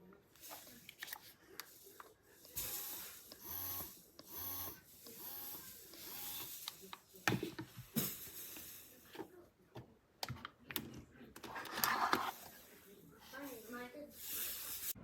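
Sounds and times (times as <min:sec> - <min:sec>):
breast pump motor whirring: 0:02.4 - 0:06.9.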